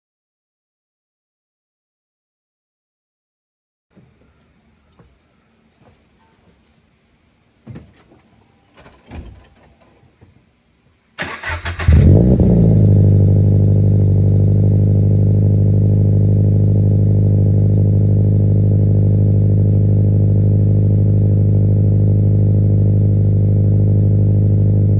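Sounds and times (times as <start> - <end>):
faint knocks: 7.6 - 10.4
car engine revving and idling: 11.4 - 24.9.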